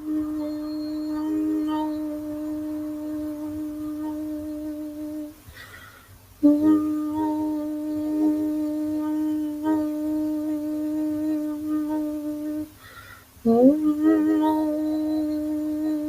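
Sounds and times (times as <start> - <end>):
person humming long note: 0.0 - 5.4, 6.4 - 12.8, 13.4 - 16.0
person breathing in: 5.4 - 6.2, 12.7 - 13.4.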